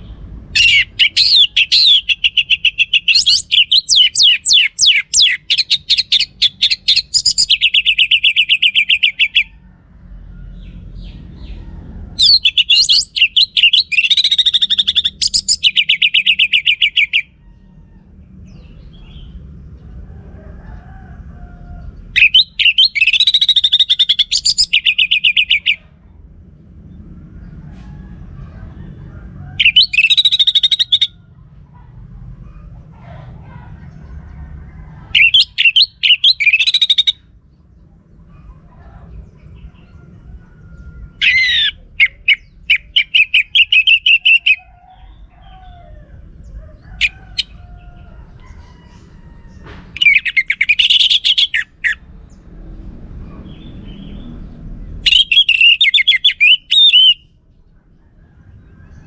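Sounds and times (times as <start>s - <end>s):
low background rumble: 0.0s - 59.0s
thrush singing warbling phrases: 0.6s - 9.5s, 12.2s - 17.3s, 22.2s - 25.8s, 55.1s - 57.2s.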